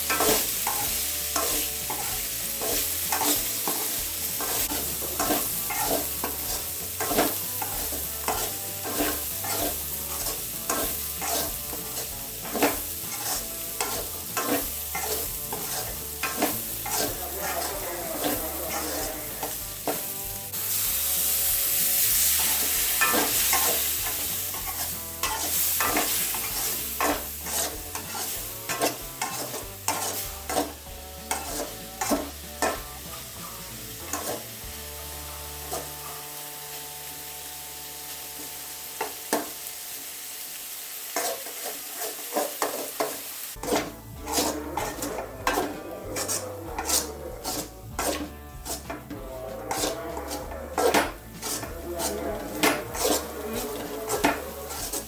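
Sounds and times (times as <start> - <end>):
spatula scraping a pan: 0.0 - 36.5, 41.0 - 55.0
food sizzling in a pan: 0.0 - 55.0.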